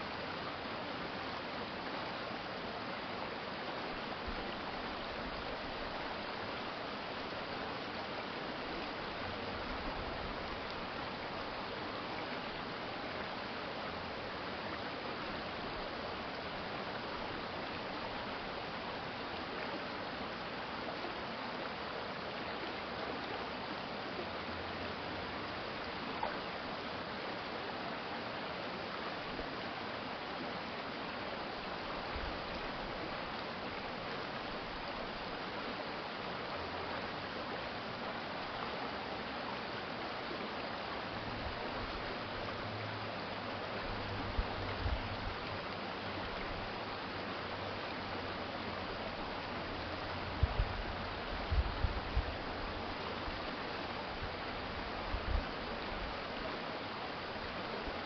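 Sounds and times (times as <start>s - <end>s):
stream water running: 0.0s - 58.0s.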